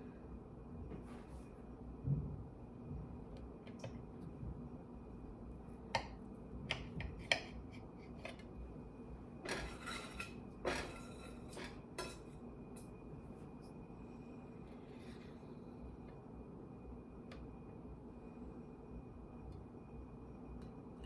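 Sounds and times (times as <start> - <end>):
knife scraping a dish: 9.5 - 12.3
knife clinking against a dish: 9.5 - 12.9.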